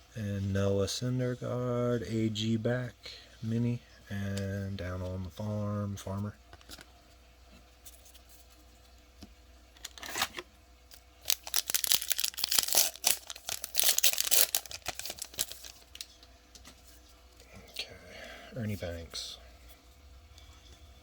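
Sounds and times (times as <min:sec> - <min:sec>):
wrapper ripping and crinkling: 0:11.2 - 0:16.1.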